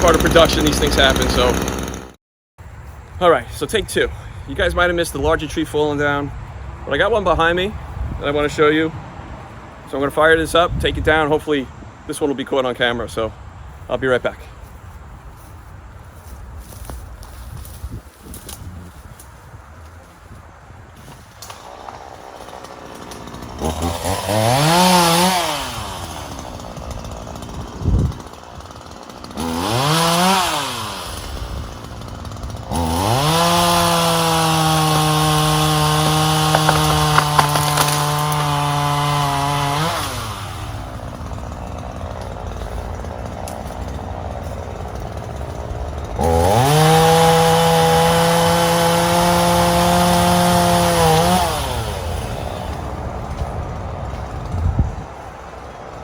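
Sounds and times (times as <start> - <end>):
chainsaw revving: 0.0 - 2.2, 21.4 - 56.0.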